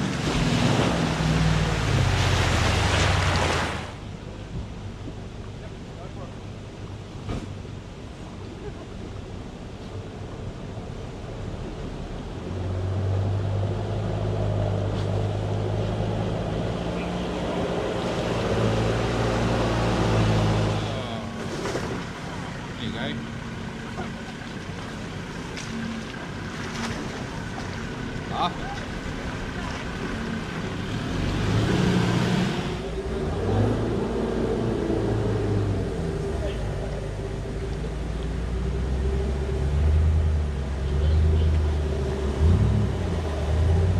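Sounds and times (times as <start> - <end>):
water rushing: 0.0 - 4.4, 10.6 - 43.9
vehicle engine running: 18.8 - 43.9.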